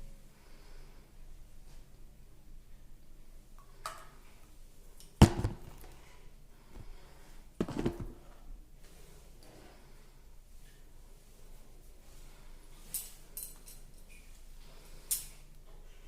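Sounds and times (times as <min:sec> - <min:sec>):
sharp hollow knocks on containers: 0:05.2 - 0:05.8, 0:07.6 - 0:08.3.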